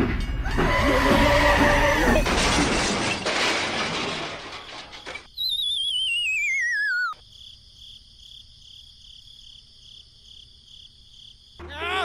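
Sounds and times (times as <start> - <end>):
high cricket-like chirping: 5.3 - 12.0
wobbling whistle sliding down: 5.4 - 7.2.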